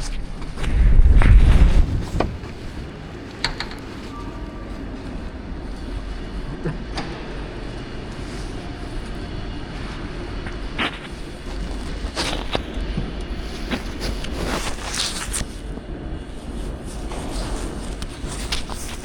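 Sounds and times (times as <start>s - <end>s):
street hum: 0.0s - 19.0s
vehicle passing with low rumble: 0.4s - 6.5s.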